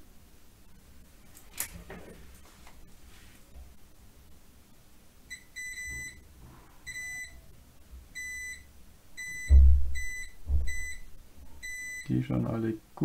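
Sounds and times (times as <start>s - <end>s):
dull thump: 9.5s - 11.0s.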